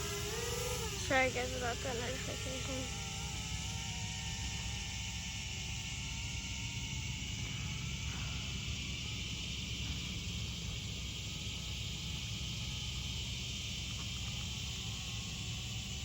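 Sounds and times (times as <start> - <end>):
drone propellers buzzing: 0.0 - 16.0
faint wavering whine: 0.0 - 16.0.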